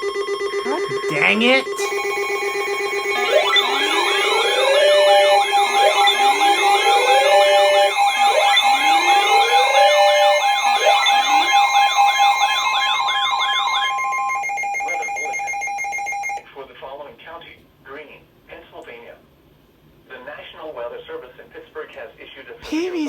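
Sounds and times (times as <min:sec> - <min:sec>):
electronic sirens wailing: 0:00.0 - 0:16.4
steady alarm tones: 0:00.0 - 0:16.4
fast yelping siren warbles: 0:00.6 - 0:16.4.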